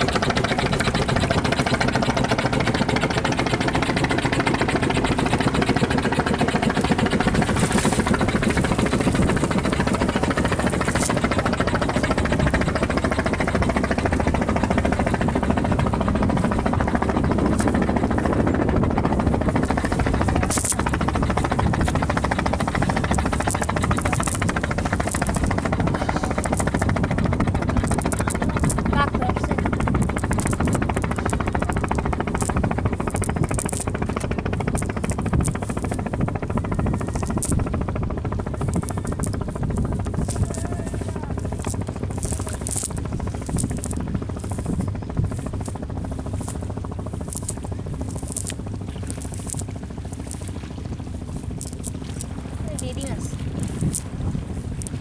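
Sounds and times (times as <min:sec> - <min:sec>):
motor running with fast pulsing: 0:00.0 - 0:55.0.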